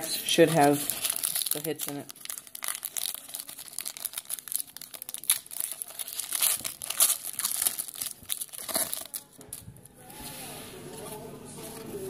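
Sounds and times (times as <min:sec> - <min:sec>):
foil wrapper crinkling and tearing: 0:00.2 - 0:09.5.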